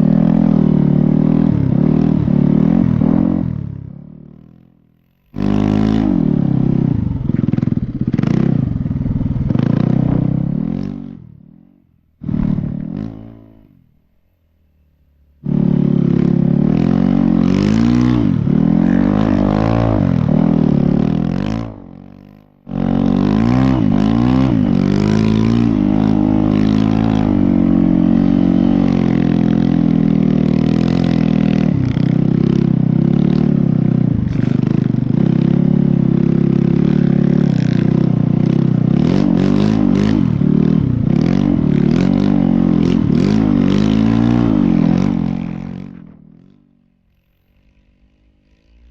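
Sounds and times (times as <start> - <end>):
dirt bike engine revving: 0.0 - 4.1, 5.3 - 14.0, 15.4 - 48.9.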